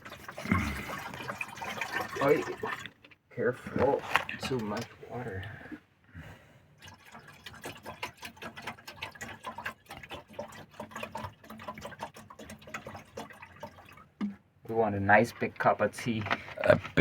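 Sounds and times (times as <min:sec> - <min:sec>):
water crackling in heated pot: 0:00.0 - 0:03.2, 0:03.8 - 0:05.6, 0:06.8 - 0:17.0.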